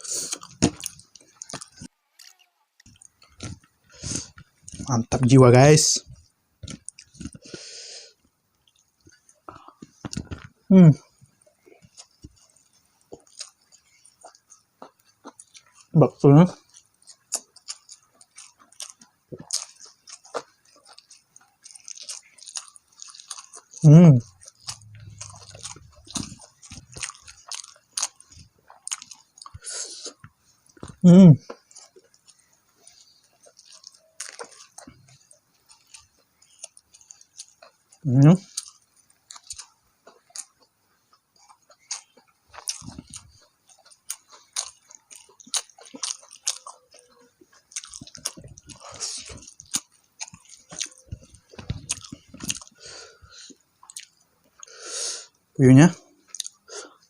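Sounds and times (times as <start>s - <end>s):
chewing and biting: 0.0s - 5.0s, 6.1s - 7.6s, 11.2s - 15.9s, 16.5s - 54.7s, 56.0s - 57.0s
breathy hiss: 7.4s - 8.2s, 54.6s - 55.4s.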